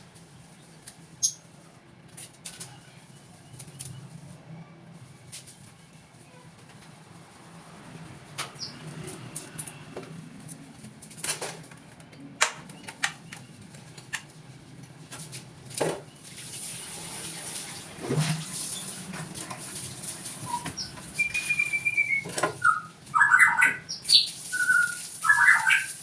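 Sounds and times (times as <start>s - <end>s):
birds fluttering: 12.7s - 26.0s.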